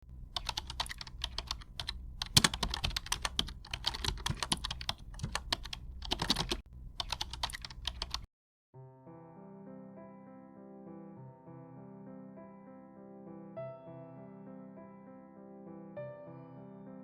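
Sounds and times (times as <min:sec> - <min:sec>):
low hum: 0:00.0 - 0:08.2
typing on a keyboard: 0:00.3 - 0:08.3.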